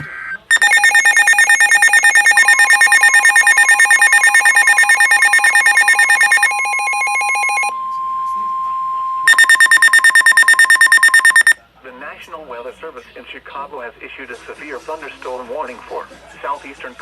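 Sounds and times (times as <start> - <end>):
steady warning alarm tone: 0.5 - 7.7, 8.8 - 11.6
weather radio rapid beeping: 0.5 - 7.7, 9.3 - 11.6.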